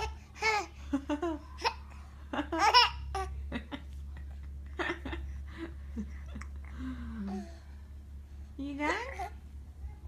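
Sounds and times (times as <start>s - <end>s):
small child laughing: 0.4s - 3.4s.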